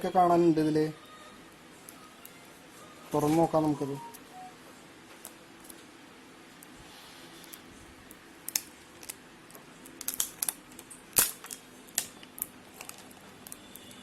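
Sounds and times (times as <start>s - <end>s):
hands handling phone packaging: 8.4s - 13.8s.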